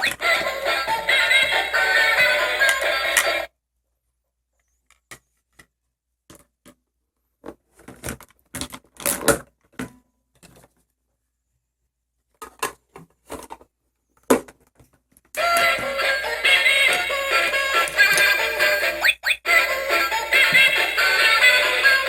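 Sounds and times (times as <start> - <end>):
plastic toy pieces clicking: 17.8 - 18.4.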